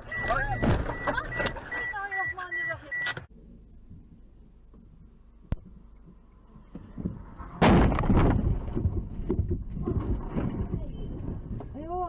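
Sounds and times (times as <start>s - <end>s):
knocks and rumble: 3.8s - 12.0s
vehicle collision impact bang: 7.3s - 10.7s.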